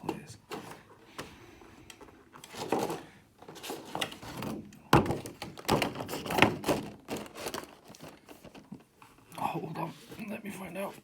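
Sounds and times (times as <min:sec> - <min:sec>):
cardboard rustling and knocking: 0:02.0 - 0:08.9.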